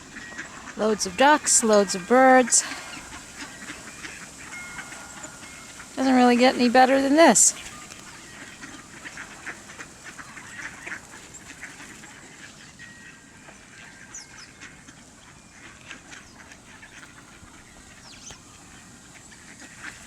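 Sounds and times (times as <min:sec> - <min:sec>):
thin whistles: 0:00.0 - 0:11.6
ducks quacking: 0:00.0 - 0:20.0.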